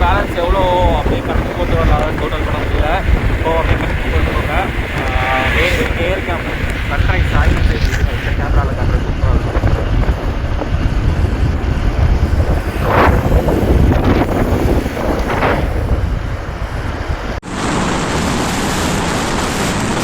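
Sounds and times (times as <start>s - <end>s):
wind buffeting microphone: 0.0s - 20.0s
bright rushing hiss: 11.1s - 20.0s.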